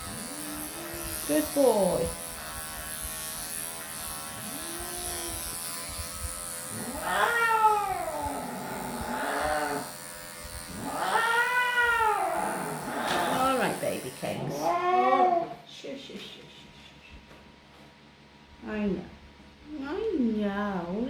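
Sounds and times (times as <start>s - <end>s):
electric clippers humming: 0.0s - 14.8s
cat mewling: 6.8s - 9.8s, 10.8s - 13.4s, 14.5s - 15.6s
cat yowling: 6.8s - 9.8s, 10.8s - 13.5s, 14.5s - 15.6s.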